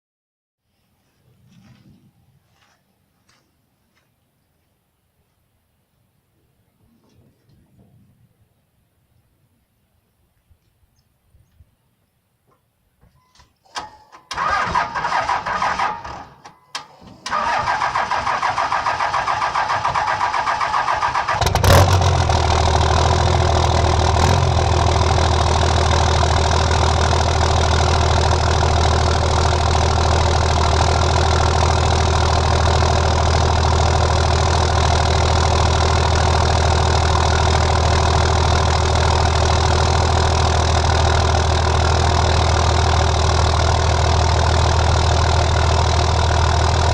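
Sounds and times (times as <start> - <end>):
diesel engine cranking on starter: 13.7 - 46.9
diesel engine idling: 17.3 - 46.9.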